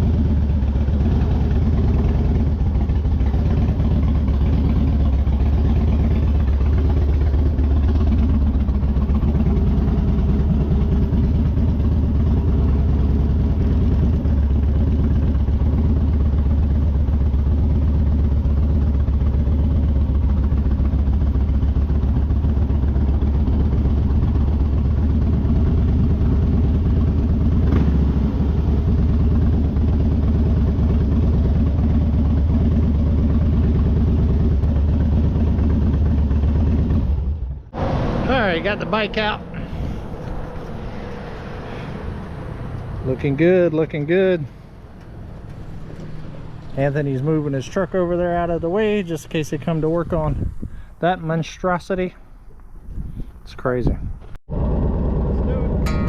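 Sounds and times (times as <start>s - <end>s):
vehicle engine idling: 0.0s - 56.0s.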